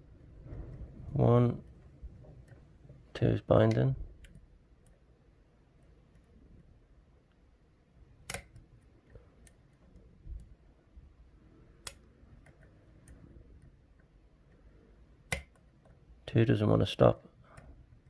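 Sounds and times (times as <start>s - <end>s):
lock pick clicking: 8.2s - 10.5s, 15.2s - 16.0s.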